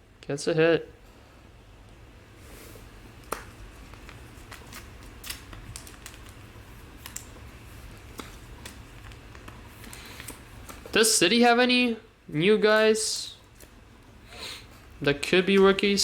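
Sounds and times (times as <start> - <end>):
low steady hum: 0.0 - 16.0
trading cards and wrappers rustling: 3.2 - 11.1.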